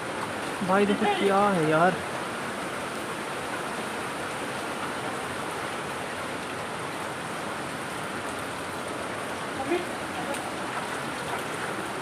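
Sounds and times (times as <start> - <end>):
waterfall and stream rushing: 0.0 - 12.0.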